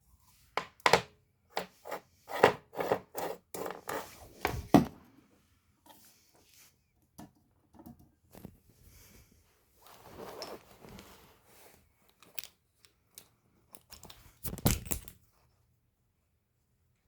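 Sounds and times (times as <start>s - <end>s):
rustling and scraping materials: 1.6s - 6.8s, 8.3s - 12.8s.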